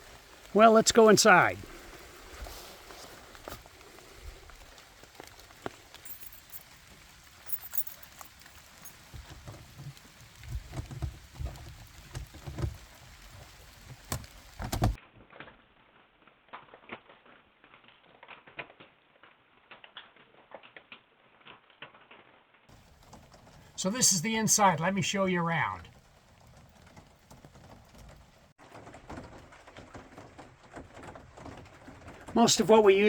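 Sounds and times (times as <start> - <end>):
rain dripping on hard roof: 0.0 - 15.0, 22.7 - 33.0
keys rattling: 6.0 - 6.7, 7.4 - 9.1.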